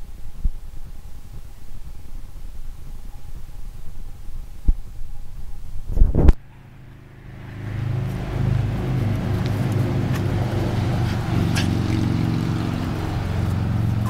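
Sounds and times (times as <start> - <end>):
motor running steadily: 6.4 - 14.0.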